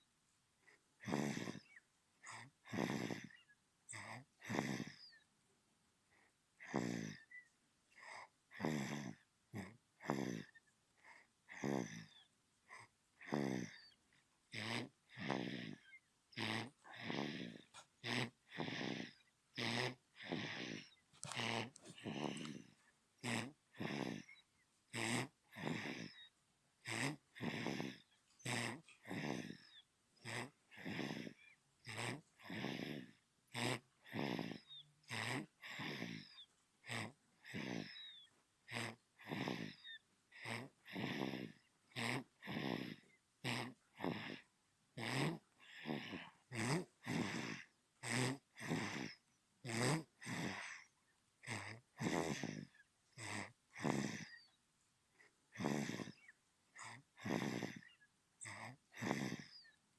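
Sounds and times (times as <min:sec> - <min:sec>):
baby snoring: 0:00.7 - 0:05.3, 0:06.6 - 0:54.6, 0:55.2 - 0:59.8.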